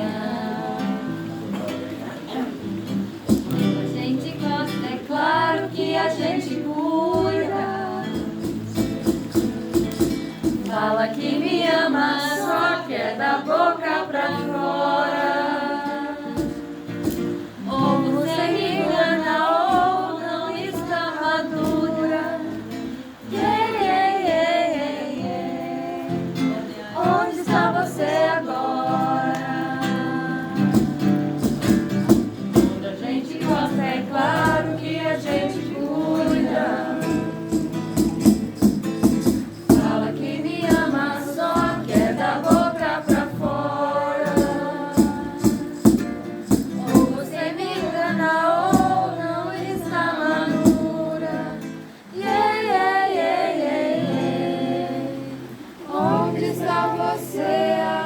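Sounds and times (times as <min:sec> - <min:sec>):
person singing: 0:03.9 - 0:09.1, 0:17.4 - 0:31.7, 0:32.5 - 0:58.0
instrumental accompaniment: 0:07.3 - 0:11.0, 0:26.2 - 0:47.8.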